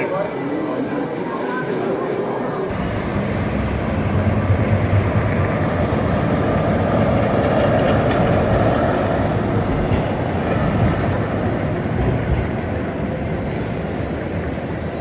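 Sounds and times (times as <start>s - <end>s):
tram rumbling on rails: 0.1s - 15.0s
wheel-on-rail clatter: 2.7s - 15.0s.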